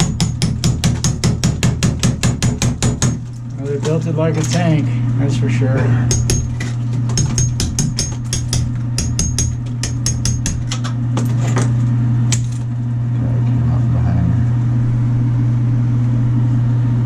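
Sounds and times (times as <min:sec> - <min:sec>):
steady low hum: 0:00.0 - 0:17.0
hammer and chisel on tile: 0:06.1 - 0:10.8.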